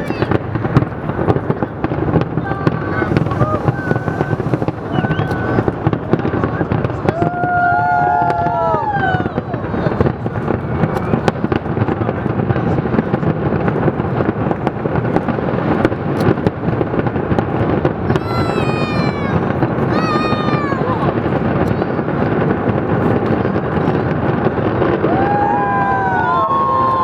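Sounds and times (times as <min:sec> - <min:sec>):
fireworks popping and crackling: 0:00.0 - 0:27.0
large crowd noise: 0:00.0 - 0:27.0
high falling calls: 0:02.8 - 0:06.1.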